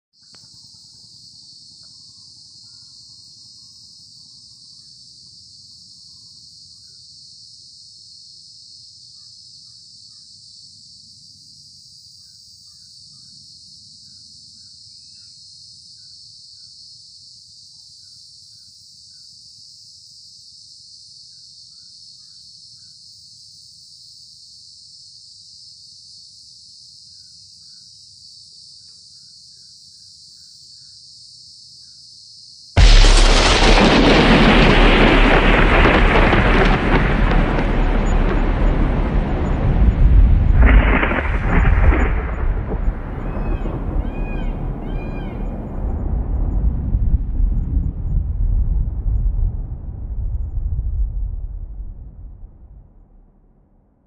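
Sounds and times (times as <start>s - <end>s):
insect chorus: 0.2s - 48.2s
low steady rumble: 32.8s - 40.9s, 41.6s - 53.5s
bird chirps: 43.1s - 45.6s.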